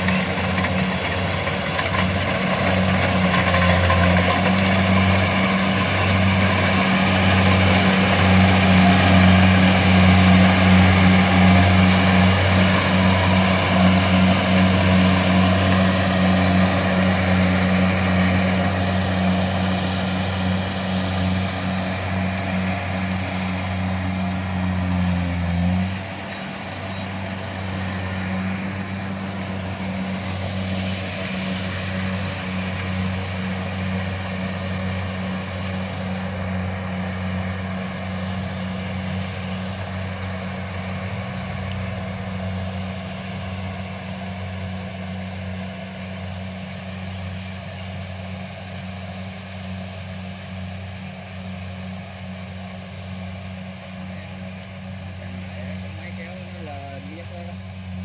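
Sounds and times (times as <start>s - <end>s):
combine harvester running: 0.0s - 58.0s.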